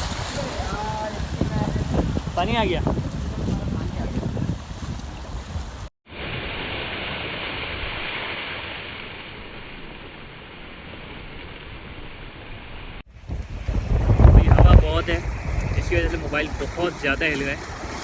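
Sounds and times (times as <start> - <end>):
wind buffeting microphone: 0.0 - 5.9, 13.1 - 18.0
sea waves surging: 0.0 - 10.2, 13.1 - 18.0.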